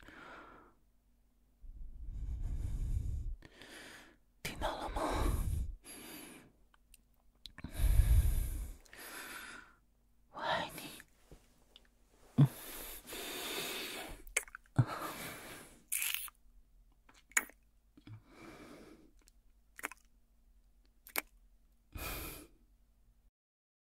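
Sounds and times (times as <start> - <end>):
man breathing slowly: 0.0 - 0.8, 1.7 - 6.6, 7.6 - 9.8, 12.2 - 15.9, 18.0 - 19.2, 21.9 - 22.6
soft mouth clicks: 6.7 - 7.6, 14.3 - 14.8, 15.9 - 16.4, 17.1 - 18.2, 19.2 - 20.1, 20.8 - 21.4.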